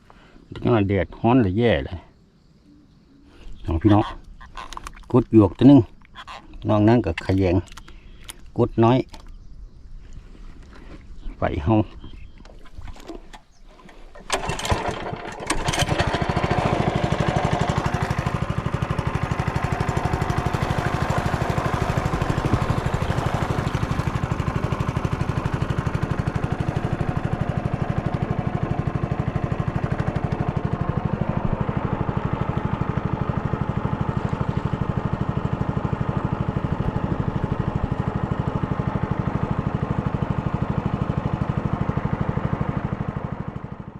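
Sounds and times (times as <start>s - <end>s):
small engine starting and running: 12.8s - 43.9s.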